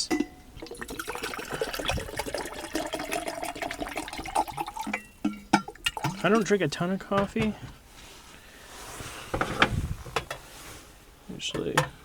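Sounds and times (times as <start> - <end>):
water pouring into container: 0.6 - 6.6.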